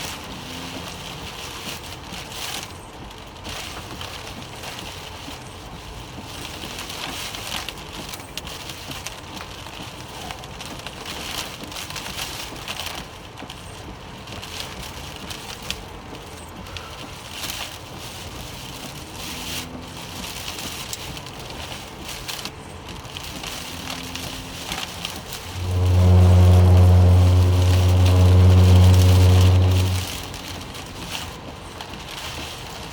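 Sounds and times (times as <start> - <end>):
rain hitting a vehicle: 0.0 - 32.9.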